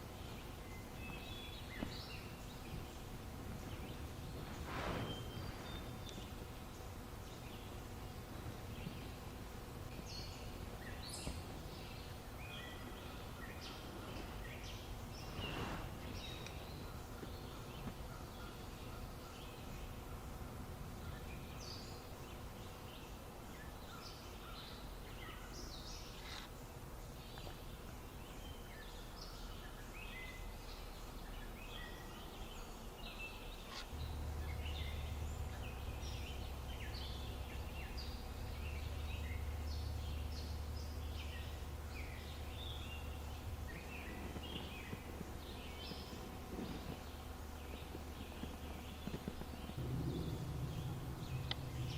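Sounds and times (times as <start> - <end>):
small birds chirping: 0.0 - 51.9
low rumble: 43.8 - 51.9.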